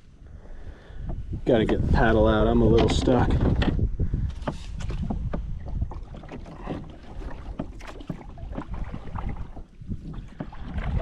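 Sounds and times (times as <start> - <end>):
wind rumbling on microphone: 0.0 - 11.0
paddle knocking against kayak hull: 2.5 - 11.0.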